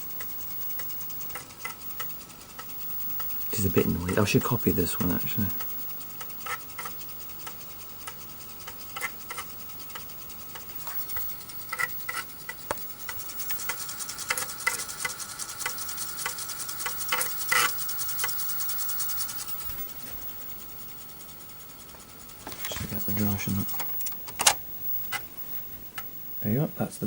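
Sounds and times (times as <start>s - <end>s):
floppy drive head clicks: 0.0s - 19.9s, 22.2s - 26.2s
floppy drive whir and ticking: 0.0s - 27.0s.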